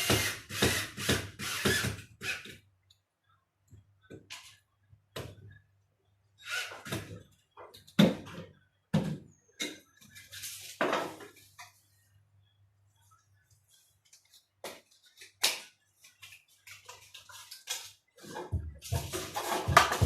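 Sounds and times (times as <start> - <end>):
knocks of hard objects handled: 18.5 - 20.0.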